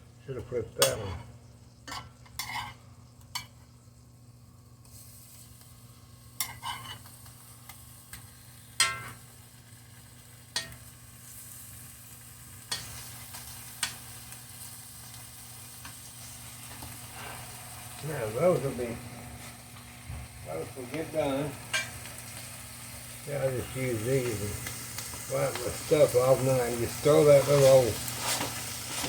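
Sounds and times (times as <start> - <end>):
patties sizzling in a skillet: 0.3 - 29.0
metal spatula scraping a pan: 1.9 - 2.8, 6.4 - 7.1.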